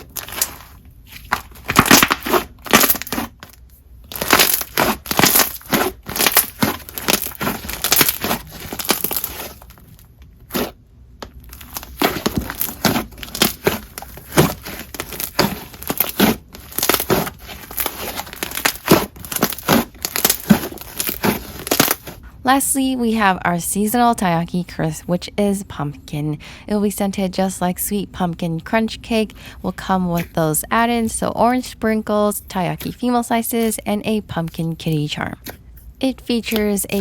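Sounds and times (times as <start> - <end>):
slime crackling and popping: 0.0 - 22.2.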